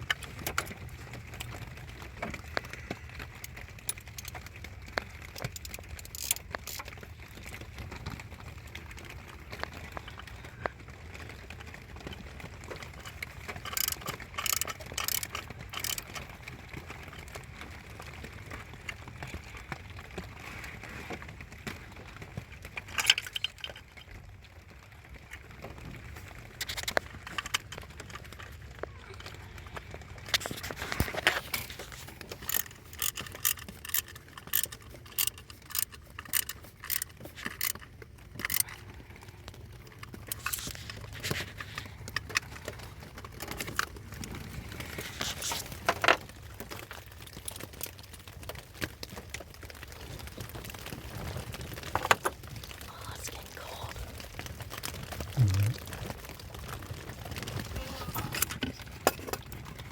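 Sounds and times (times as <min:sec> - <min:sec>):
metallic clicks and rattles: 0:00.0 - 0:10.7, 0:11.9 - 0:17.4, 0:22.7 - 0:24.2, 0:26.6 - 0:49.4
low steady hum: 0:55.3 - 0:55.8.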